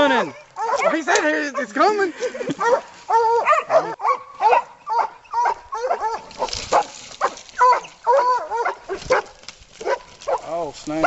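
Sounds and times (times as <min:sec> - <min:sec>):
dogs barking: 0:00.1 - 0:11.0.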